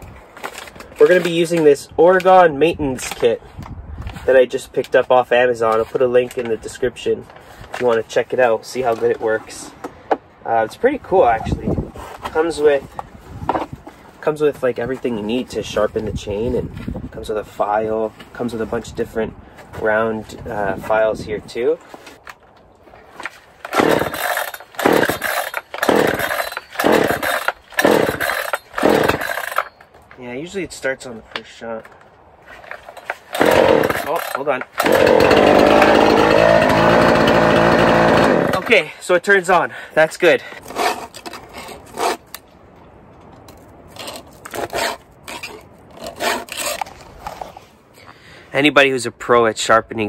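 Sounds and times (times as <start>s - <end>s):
chainsaw starter cord pulls: 23.2s - 29.8s, 32.5s - 38.9s, 44.0s - 47.5s
engine turning over: 23.7s - 29.6s, 33.3s - 38.7s
file rasping on saw chain: 23.7s - 29.7s, 40.6s - 42.3s, 44.0s - 46.9s.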